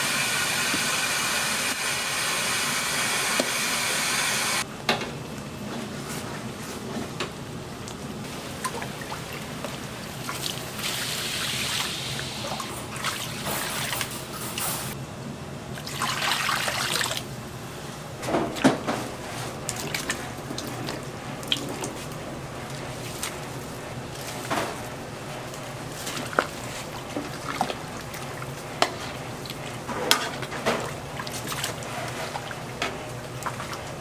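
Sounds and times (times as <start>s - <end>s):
steady background hum: 0.0s - 34.0s
utensils clinking and knocking: 12.7s - 15.0s.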